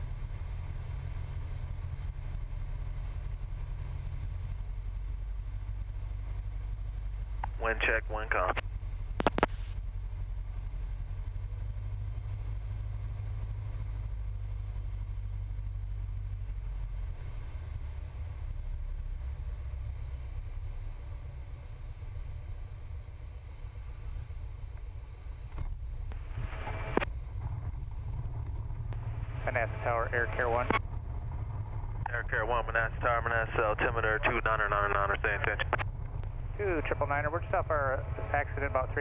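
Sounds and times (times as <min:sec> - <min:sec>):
light aircraft engine drone: 0:00.0 - 0:39.0
sharp radio clicks: 0:09.2 - 0:09.5, 0:29.4 - 0:30.8, 0:32.0 - 0:37.1.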